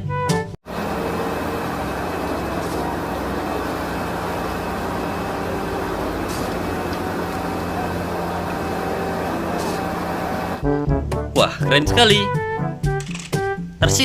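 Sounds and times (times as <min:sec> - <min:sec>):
vehicle engine running: 0:00.7 - 0:10.6.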